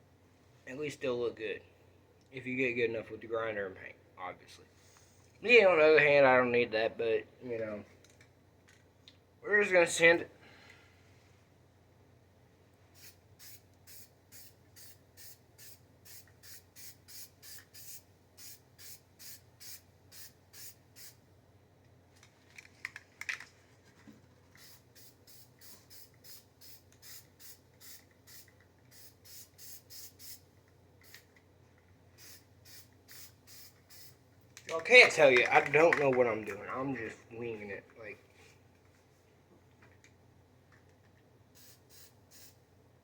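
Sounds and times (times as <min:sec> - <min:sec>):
spray paint short hisses: 0:13.0 - 0:21.2, 0:24.6 - 0:31.3, 0:32.2 - 0:34.2, 0:41.6 - 0:42.6.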